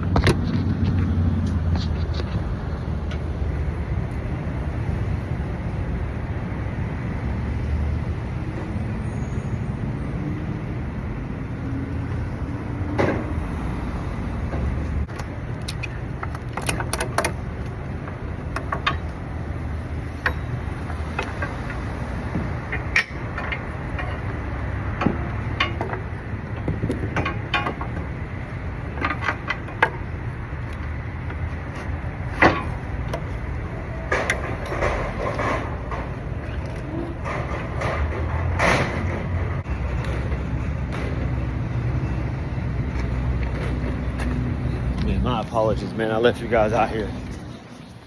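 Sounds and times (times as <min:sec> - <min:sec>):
vehicle motor rumble: 0:00.0 - 0:48.0
sharp knocks and clicks: 0:14.5 - 0:41.5.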